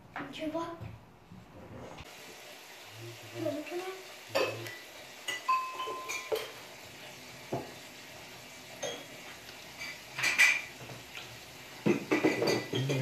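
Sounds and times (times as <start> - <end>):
utensils clinking against pots: 4.3 - 6.7, 8.8 - 9.2, 9.8 - 10.9, 11.8 - 13.0.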